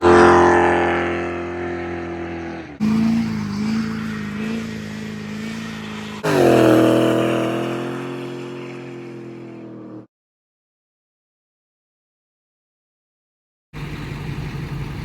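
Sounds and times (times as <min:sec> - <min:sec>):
car engine running: 0:01.3 - 0:09.8, 0:13.8 - 0:15.0.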